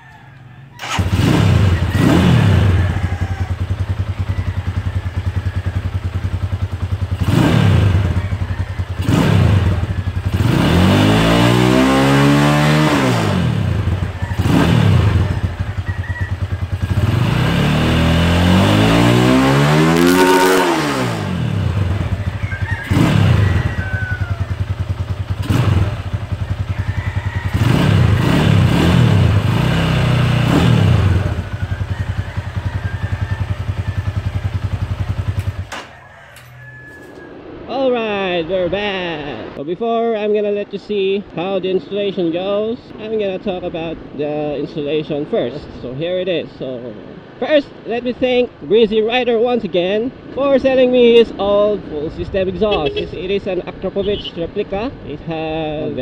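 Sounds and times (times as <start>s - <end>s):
motorcycle engine idling and revving: 0.0s - 37.4s, 50.2s - 56.0s.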